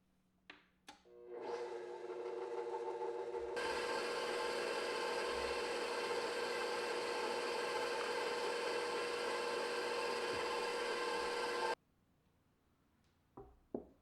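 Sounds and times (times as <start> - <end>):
small electric motor whirring: 1.2 - 11.8.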